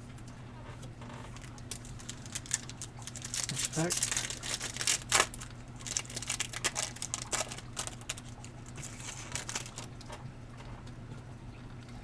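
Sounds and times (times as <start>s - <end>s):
foil wrapper crinkling: 1.1s - 10.0s
cards clicking and rustling: 1.3s - 9.9s.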